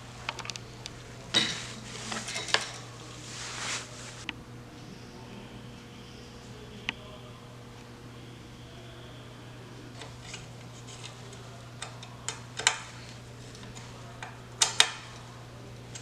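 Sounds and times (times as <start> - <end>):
steady low hum: 0.0 - 16.0
metal tools clicking and tapping: 10.0 - 15.3.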